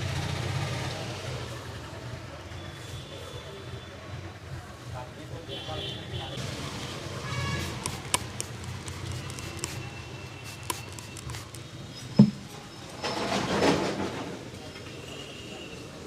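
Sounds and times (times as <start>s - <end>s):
light clicks and taps: 7.6s - 9.9s.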